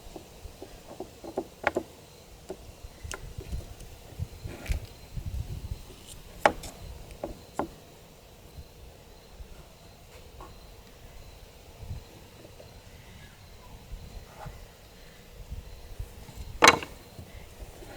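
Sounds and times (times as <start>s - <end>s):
wooden pieces and tools knocking: 0.0s - 3.8s, 6.1s - 7.8s, 16.3s - 17.3s.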